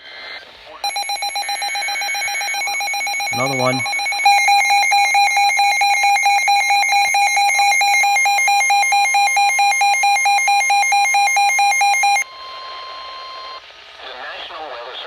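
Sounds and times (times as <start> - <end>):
harsh two-tone alert tone: 0.8 - 12.3.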